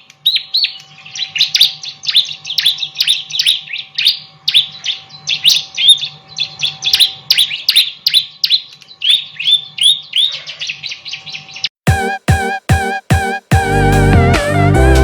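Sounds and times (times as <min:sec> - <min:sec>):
bird chirping rapidly: 0:00.0 - 0:12.1
short musical stabs: 0:11.9 - 0:15.0.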